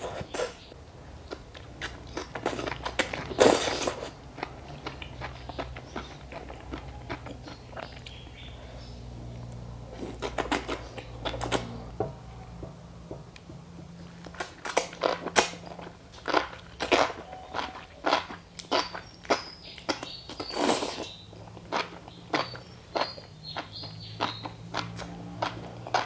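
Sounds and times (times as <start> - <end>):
crunchy bites and chewing: 0.1 - 8.5, 14.0 - 26.0.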